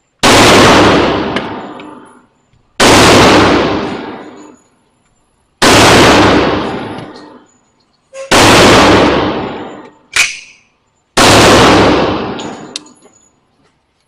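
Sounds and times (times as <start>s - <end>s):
loud gunshots ringing out: 0.2s - 2.2s, 2.8s - 4.6s, 5.6s - 7.5s, 8.3s - 12.8s.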